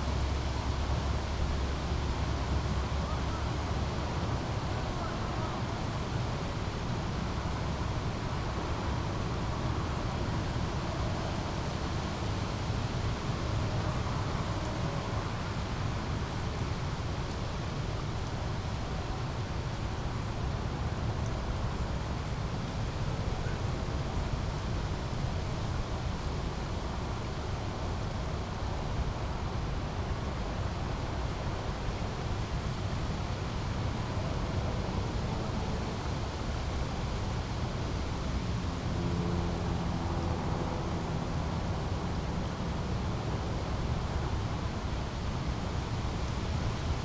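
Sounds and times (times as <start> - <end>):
low rumble of city traffic: 0.0 - 47.0.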